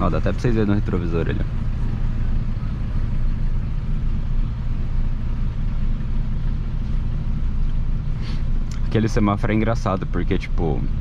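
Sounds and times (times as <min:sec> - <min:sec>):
car engine droning: 0:00.0 - 0:11.0.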